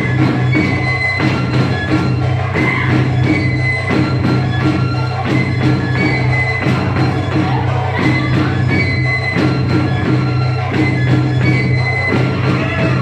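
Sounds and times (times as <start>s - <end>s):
folk dance music: 0.0s - 13.0s.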